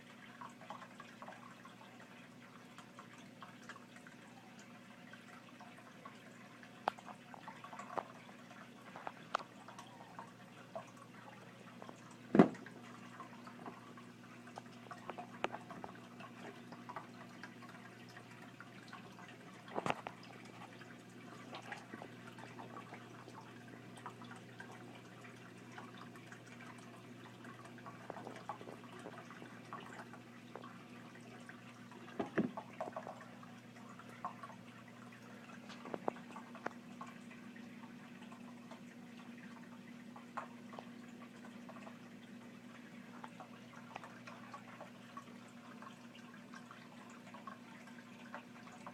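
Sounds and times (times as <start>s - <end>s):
lizard feeding clicks and taps: 19.7s - 20.2s.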